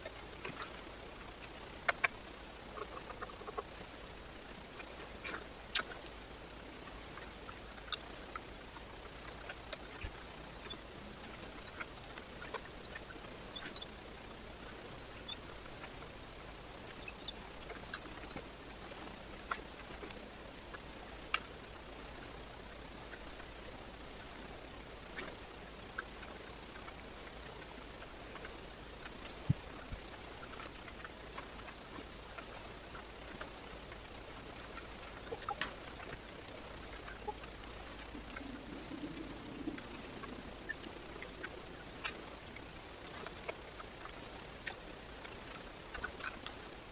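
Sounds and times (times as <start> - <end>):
steady hiss: 0.0 - 46.9
faint high bird chirps: 16.8 - 18.4
birds tapping and pecking: 25.1 - 46.8.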